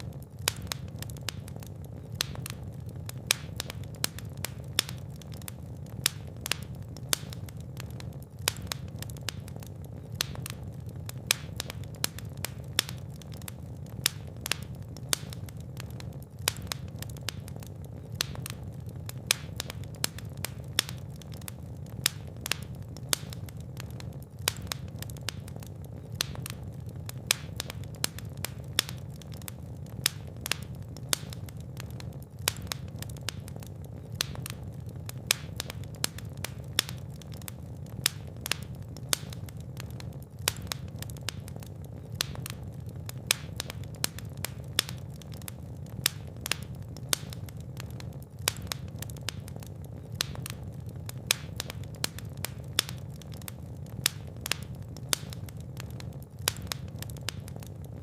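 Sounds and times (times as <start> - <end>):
low rumble of flame: 0.0 - 58.0
sharp snaps: 0.0 - 58.0
wood fire crackling: 0.0 - 58.0.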